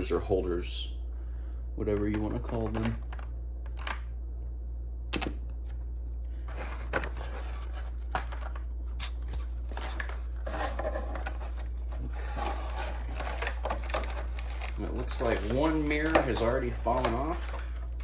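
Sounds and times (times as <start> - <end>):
steady low hum: 0.0 - 18.0
plastic packaging rustling and clicking: 6.5 - 18.0.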